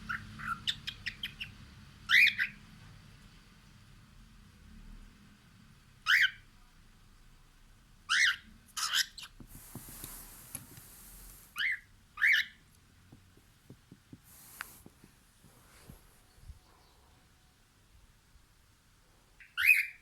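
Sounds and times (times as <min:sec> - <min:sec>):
cockatiel chirping: 0:00.0 - 0:02.6, 0:06.0 - 0:06.4, 0:08.1 - 0:09.9, 0:10.9 - 0:12.6, 0:19.4 - 0:20.0
faint high hiss: 0:09.3 - 0:12.0, 0:13.4 - 0:19.3.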